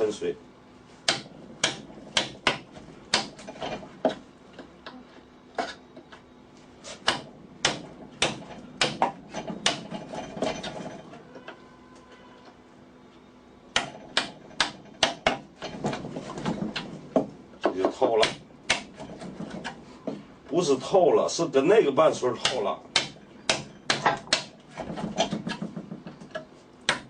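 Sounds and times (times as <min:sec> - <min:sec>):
chisel struck into hard wood: 0:01.1 - 0:03.3, 0:07.0 - 0:09.8, 0:13.7 - 0:15.5, 0:18.2 - 0:19.0, 0:22.4 - 0:24.6.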